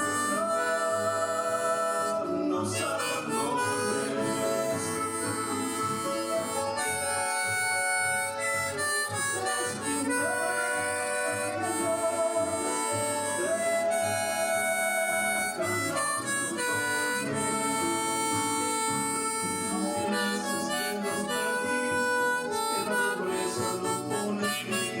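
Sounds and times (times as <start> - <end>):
harmonica melody: 0.0 - 25.0.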